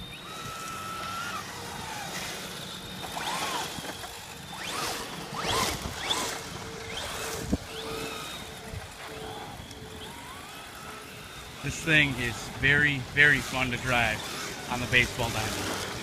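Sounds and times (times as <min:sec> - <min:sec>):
electric motors whining: 0:00.0 - 0:16.0.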